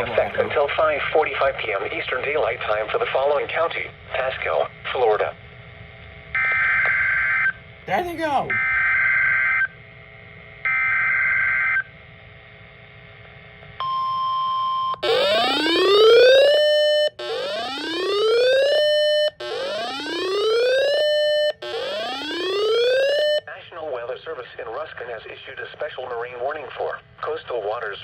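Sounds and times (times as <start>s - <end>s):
alarm sweeping up in pitch: 13.9s - 23.4s.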